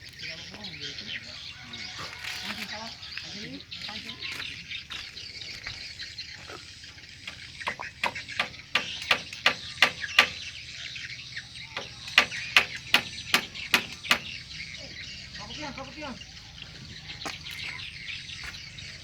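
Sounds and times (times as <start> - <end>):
hand tool knocking: 7.3 - 10.4, 11.8 - 14.4.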